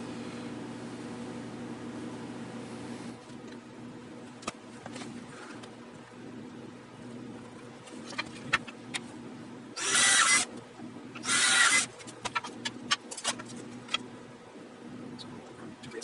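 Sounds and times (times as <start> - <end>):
power drill boring into wood: 9.8 - 10.5, 11.2 - 11.9.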